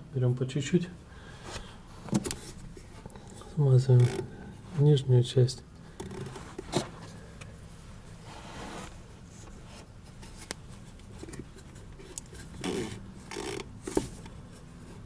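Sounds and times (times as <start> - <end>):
short scraping rubs: 8.2 - 9.9.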